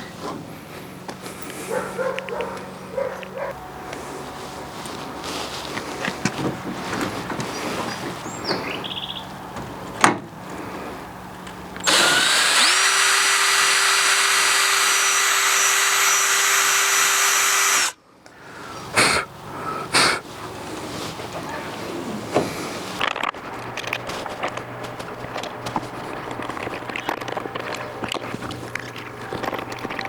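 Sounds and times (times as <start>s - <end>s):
electric drill running: 11.8s - 18.0s.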